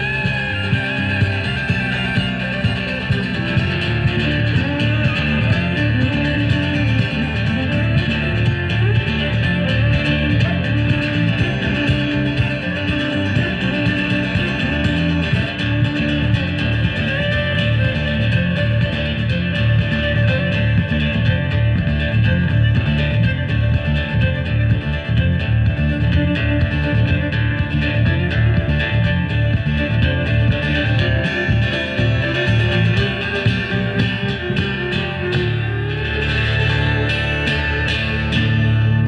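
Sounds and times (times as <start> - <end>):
bass line: 0.0 - 39.0
guitar: 0.0 - 39.0
live band instrumental: 0.0 - 39.0
steady drum beat: 0.0 - 39.0.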